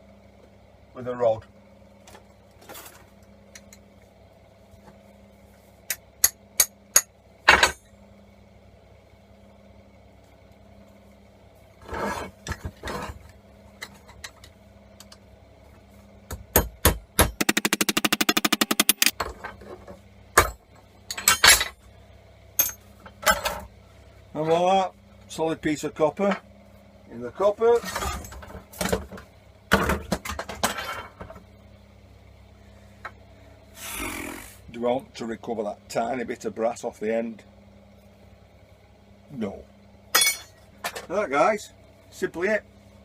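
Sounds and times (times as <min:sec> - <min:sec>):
hammer striking steel rod: 0:16.6 - 0:19.1
rapid rattling taps: 0:17.3 - 0:19.1.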